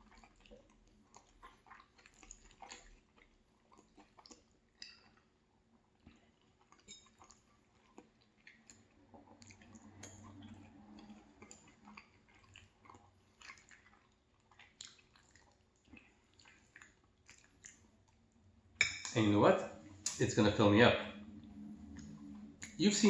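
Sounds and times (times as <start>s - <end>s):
chewing food: 0.0s - 19.2s, 21.2s - 23.0s
wet mouth clicks and smacks: 6.0s - 18.2s, 21.9s - 22.8s.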